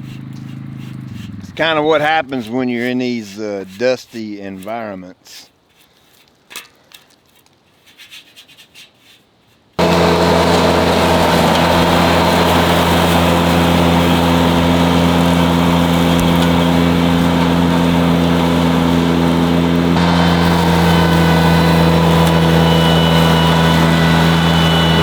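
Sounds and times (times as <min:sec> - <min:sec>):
tractor engine and mower droning: 0:00.0 - 0:04.2, 0:09.8 - 0:25.0.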